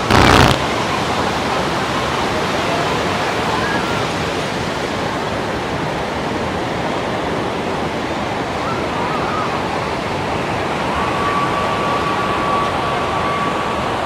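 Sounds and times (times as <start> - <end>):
ocean surf rushing: 0.0 - 7.9.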